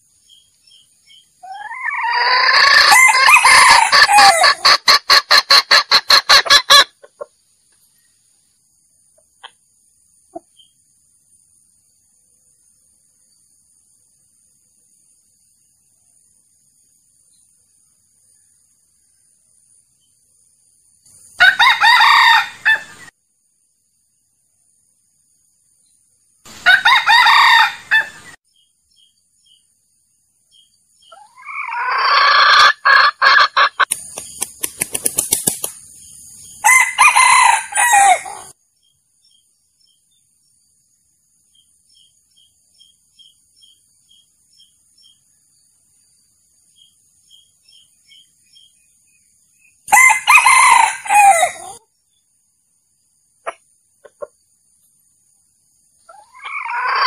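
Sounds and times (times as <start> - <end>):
rooster crowing: 1.4 - 4.7, 21.4 - 23.0, 26.6 - 28.4, 36.6 - 38.5, 49.9 - 51.8, 56.1 - 57.0.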